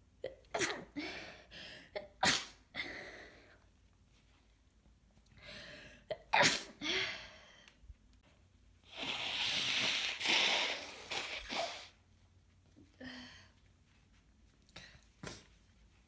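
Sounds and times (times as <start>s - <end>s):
woman sneezing: 6.4s - 7.0s.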